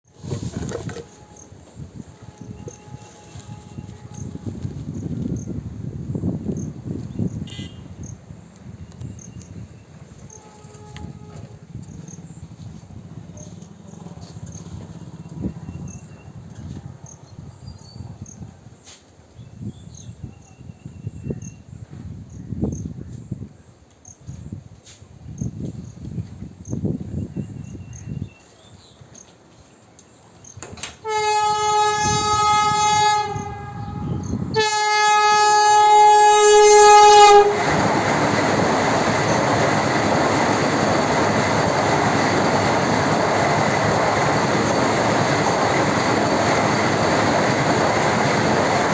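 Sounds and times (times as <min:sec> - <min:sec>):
train horn blasts: 0:00.3 - 0:04.8, 0:07.2 - 0:08.0, 0:10.2 - 0:11.8, 0:31.0 - 0:38.0
train rushing past: 0:31.0 - 0:48.9.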